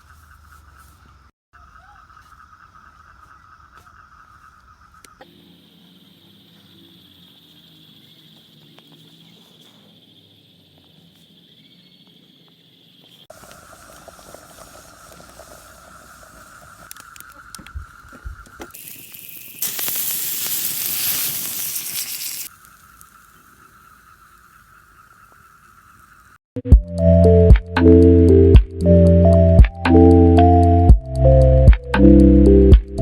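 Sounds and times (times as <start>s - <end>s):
night insects trilling: 1.6s - 26.4s.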